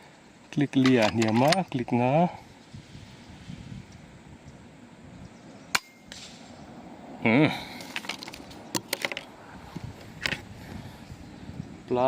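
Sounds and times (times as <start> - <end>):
air rifle shot: 5.7 - 6.5.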